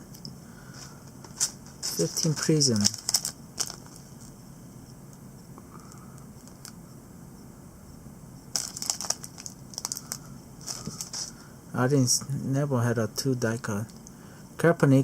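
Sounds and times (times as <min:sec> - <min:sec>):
low steady hum: 0:00.0 - 0:15.0
foil wrapper crinkling: 0:00.8 - 0:04.3, 0:08.5 - 0:11.4.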